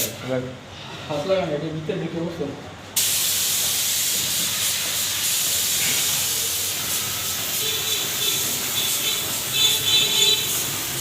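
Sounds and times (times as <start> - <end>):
spray gun hissing: 3.0 - 11.0.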